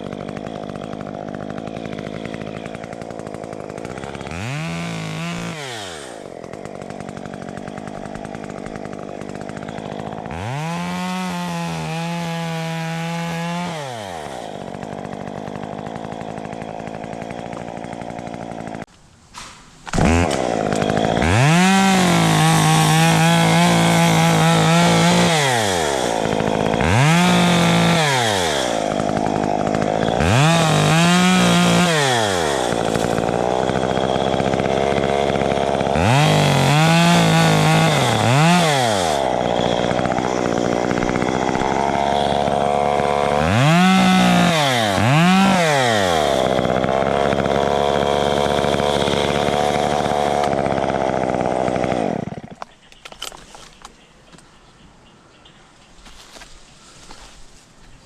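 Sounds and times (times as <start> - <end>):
chainsaw revving: 0.0 - 18.9, 19.9 - 53.9.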